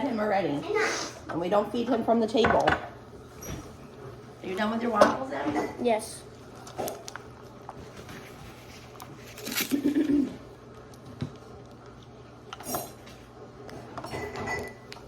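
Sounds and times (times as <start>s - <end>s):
plates and cutlery clinking: 5.0s - 5.9s, 13.8s - 15.0s.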